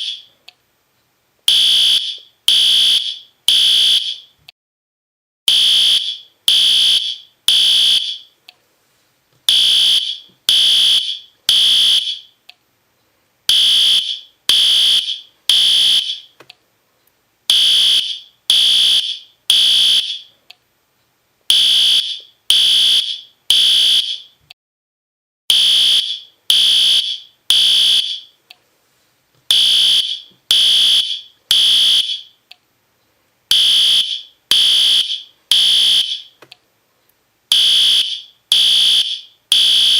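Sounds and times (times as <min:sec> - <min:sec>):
fire alarm horn blasts: 0:01.5 - 0:04.3, 0:05.5 - 0:08.3, 0:09.5 - 0:12.3, 0:13.5 - 0:16.3, 0:17.5 - 0:20.3, 0:21.5 - 0:24.4, 0:25.5 - 0:28.4, 0:29.5 - 0:32.4, 0:33.5 - 0:36.4, 0:37.5 - 0:39.9.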